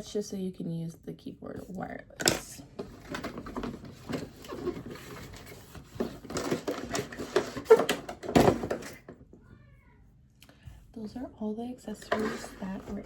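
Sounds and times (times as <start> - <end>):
packaging rustling: 2.8 - 9.0.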